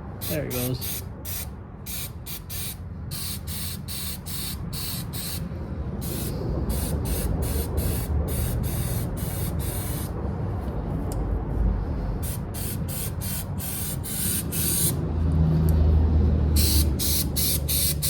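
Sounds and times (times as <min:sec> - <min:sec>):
aerosol can spraying: 0:00.2 - 0:05.4, 0:06.0 - 0:10.1, 0:12.2 - 0:15.0, 0:16.6 - 0:18.0
low rumble: 0:05.4 - 0:14.1.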